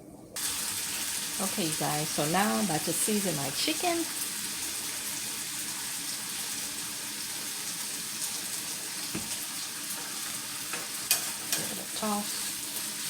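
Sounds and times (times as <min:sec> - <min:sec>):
chicken sizzling in a skillet: 0:00.4 - 0:13.0
soft knock: 0:09.1 - 0:09.4.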